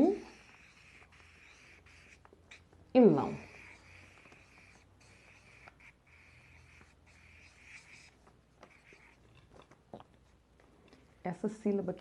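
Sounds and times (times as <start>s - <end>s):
pen scratching while writing: 0.1s - 2.3s, 3.3s - 9.2s.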